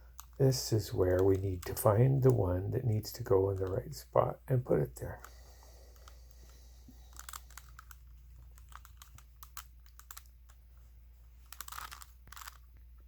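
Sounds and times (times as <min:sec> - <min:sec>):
plastic puzzle cube clicking: 0:00.1 - 0:00.4, 0:03.5 - 0:03.8, 0:06.0 - 0:10.6, 0:11.4 - 0:12.8.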